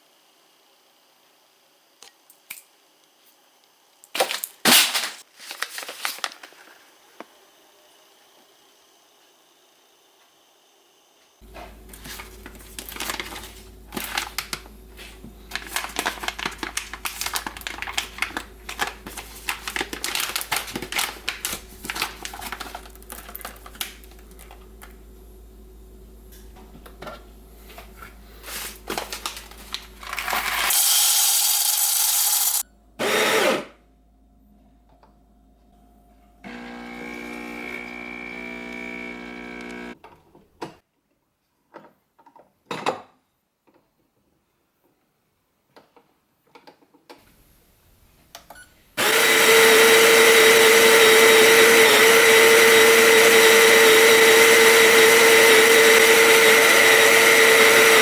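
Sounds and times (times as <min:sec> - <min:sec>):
coffee grinder motor whining: 0:29.6 - 0:33.7, 0:36.5 - 0:40.0, 0:49.0 - 0:58.0.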